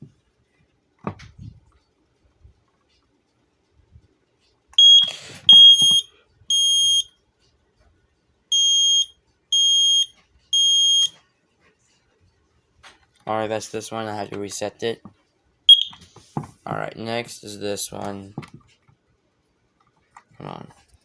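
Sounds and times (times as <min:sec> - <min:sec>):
smoke alarm beeps: 0:04.8 - 0:07.2, 0:08.5 - 0:11.2, 0:15.7 - 0:16.0.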